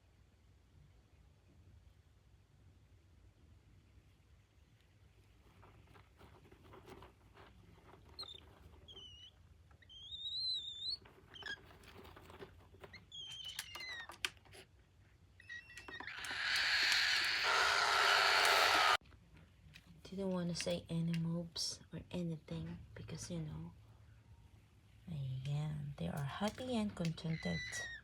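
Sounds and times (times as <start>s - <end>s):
cockatiel chirping: 8.2s - 11.7s, 15.4s - 19.0s.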